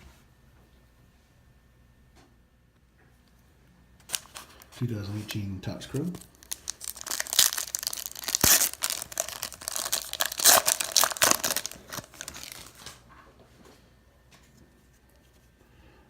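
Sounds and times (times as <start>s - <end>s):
wrapper tearing and crinkling: 4.0s - 13.0s.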